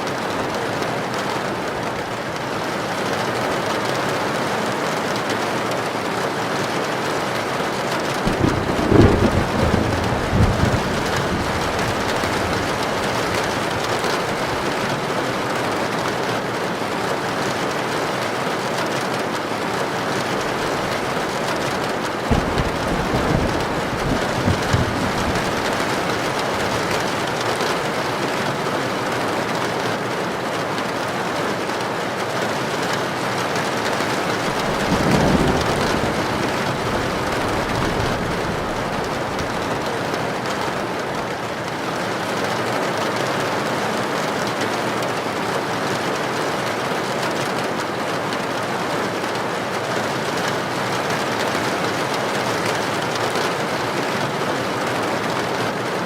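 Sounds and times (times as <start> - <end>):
heavy rain on a tin roof: 0.0 - 56.0
thunder rumbling: 8.0 - 16.2, 20.2 - 28.2, 34.1 - 42.0.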